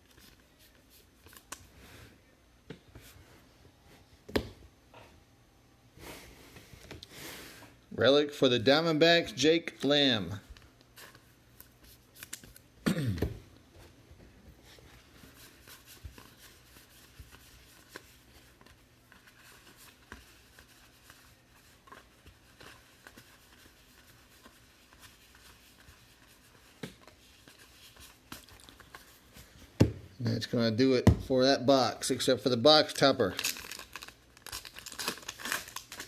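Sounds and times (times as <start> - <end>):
foil wrappers crinkling: 32.9 - 36.0.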